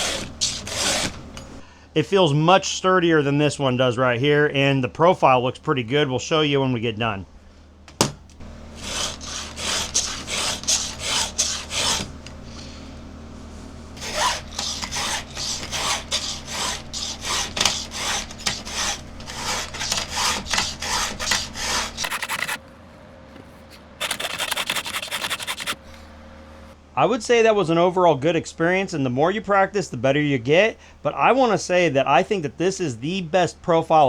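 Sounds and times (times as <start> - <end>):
file rasping on chainsaw chain: 0.0 - 1.6, 8.4 - 12.9, 14.0 - 22.6, 24.0 - 25.8.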